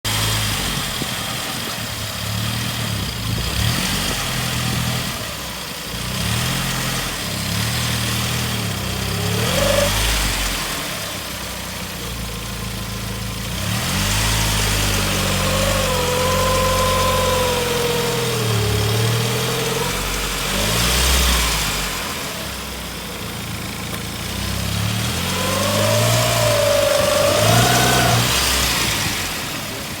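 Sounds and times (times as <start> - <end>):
car engine running: 0.0 - 30.0
wavering whining tone: 14.3 - 20.6, 25.1 - 29.1.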